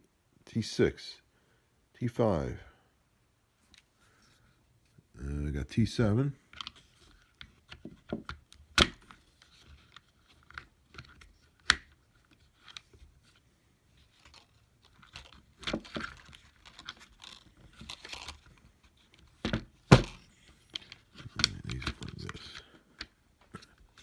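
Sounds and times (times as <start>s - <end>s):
plastic clicks and knocks: 7.4s - 9.1s, 19.4s - 24.0s
rattling and crinkling: 14.0s - 22.6s.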